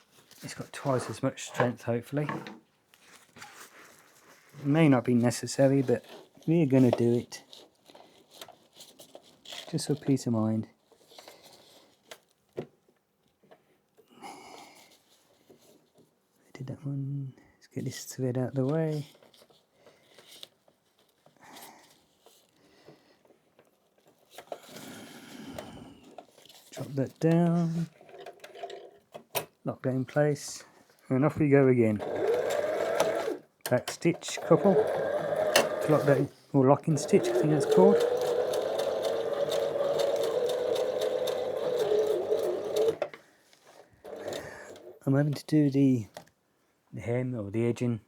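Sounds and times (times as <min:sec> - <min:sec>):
fabric rustle: 0:02.6 - 0:12.4
sewing machine stitching: 0:27.6 - 0:29.0, 0:31.9 - 0:45.1.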